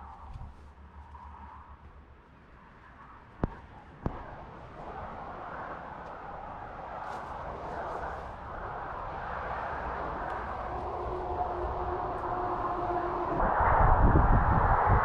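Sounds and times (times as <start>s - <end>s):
highway road noise: 0.0s - 15.0s
vehicle passing with deep rumble: 4.0s - 15.0s.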